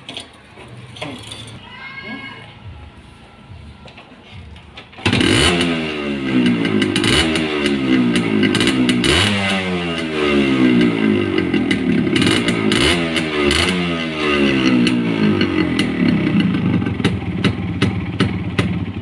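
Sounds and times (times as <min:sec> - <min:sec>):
two-stroke engine revving: 0:05.0 - 0:19.0.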